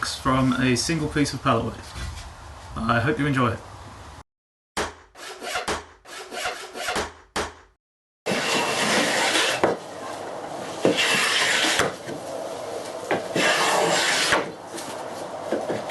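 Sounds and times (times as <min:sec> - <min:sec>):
sharp knocks: 0:04.8 - 0:06.0
rasping scrape on wood: 0:05.2 - 0:07.0, 0:08.3 - 0:09.8, 0:10.8 - 0:12.0, 0:13.2 - 0:14.6
tool strokes on wood: 0:05.2 - 0:07.1, 0:08.3 - 0:09.8, 0:10.8 - 0:12.0, 0:13.1 - 0:14.6.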